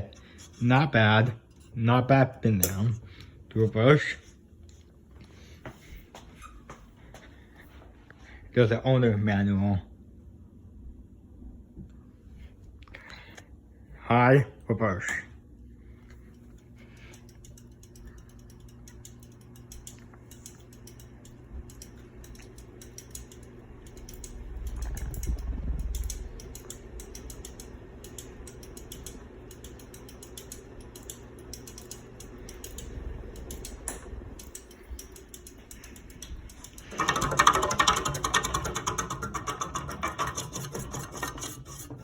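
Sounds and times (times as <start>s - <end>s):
ceiling fan motor hum: 0.0s - 42.0s
fast mechanical clicking: 17.0s - 42.0s
loud rubbing scraping noise: 39.2s - 42.0s.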